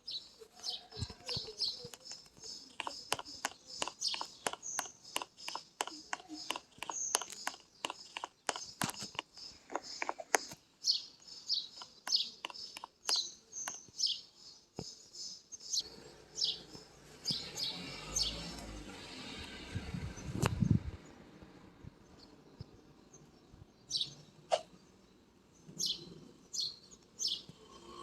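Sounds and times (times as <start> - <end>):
small bird chirping: 0.0 - 28.0
sharp clicks and taps: 0.9 - 10.6, 11.7 - 14.0.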